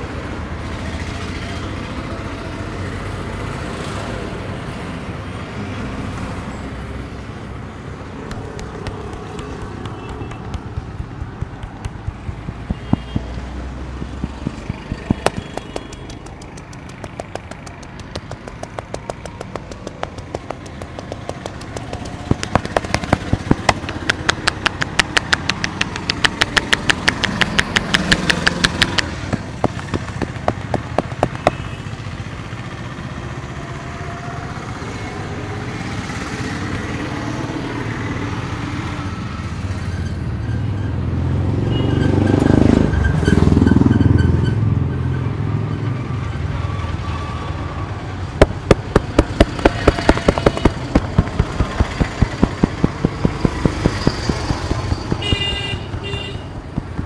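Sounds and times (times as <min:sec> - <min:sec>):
street traffic: 0:00.0 - 0:57.0
hands slapping on a head: 0:08.3 - 0:31.6.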